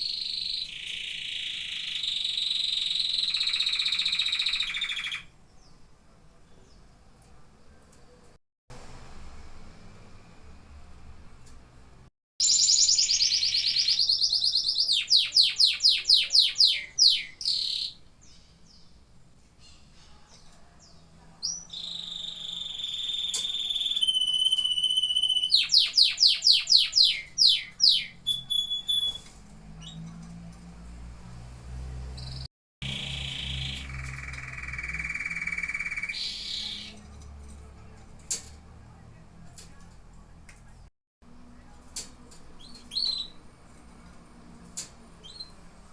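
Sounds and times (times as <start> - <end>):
canary singing: 0.0 - 5.8, 12.4 - 19.0, 20.0 - 30.1, 32.2 - 37.3, 42.5 - 43.5.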